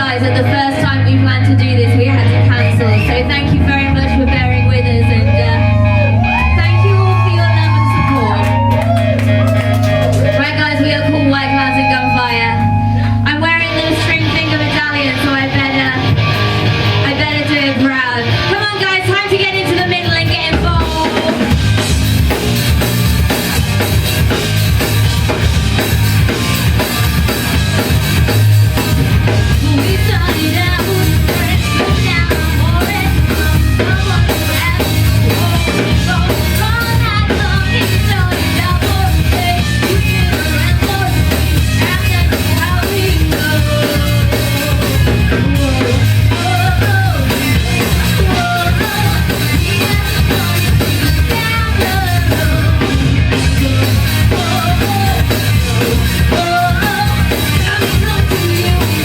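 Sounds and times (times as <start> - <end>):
live rock band playing: 0.0 - 59.0
drum kit beat: 2.0 - 13.6, 15.1 - 59.0
person singing: 29.4 - 59.0.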